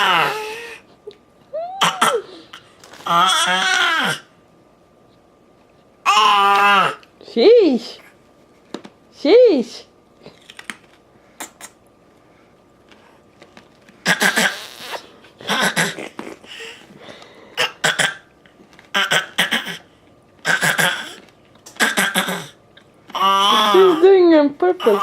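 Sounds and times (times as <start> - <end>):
toddler fake coughing: 1.8 - 2.3, 14.0 - 16.2, 17.6 - 18.3, 18.9 - 22.6.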